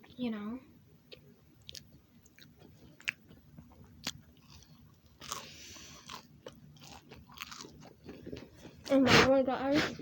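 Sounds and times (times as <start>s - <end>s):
crunchy snack chewing: 1.6s - 8.9s.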